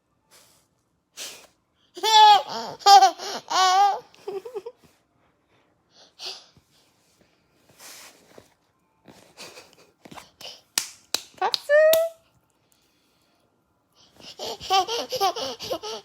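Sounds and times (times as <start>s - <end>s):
toddler giggling: 14.3s - 16.0s.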